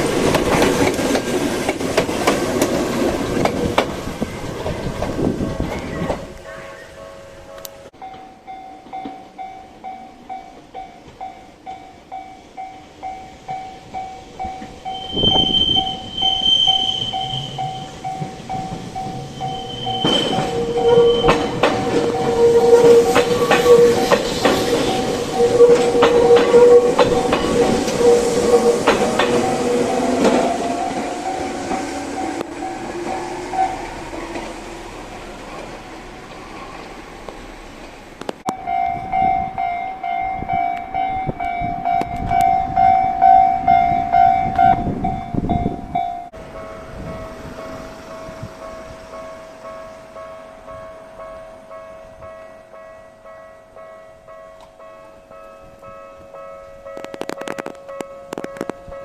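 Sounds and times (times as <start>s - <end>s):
train wheels clacking over rail joints: 0.0s - 6.3s, 17.1s - 38.6s
level-crossing warning bell: 4.4s - 36.0s, 38.5s - 59.0s.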